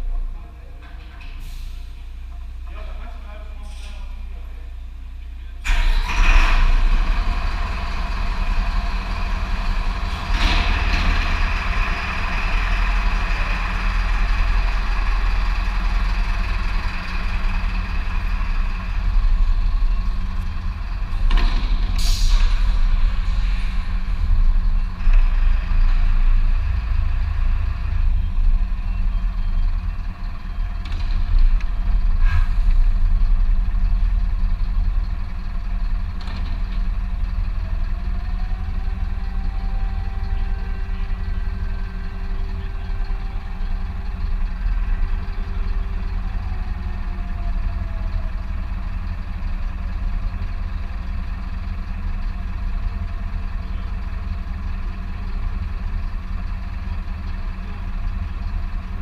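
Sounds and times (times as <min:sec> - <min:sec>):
diesel truck engine rumbling: 0:00.0 - 0:59.0
distant siren wailing: 0:37.4 - 0:49.7.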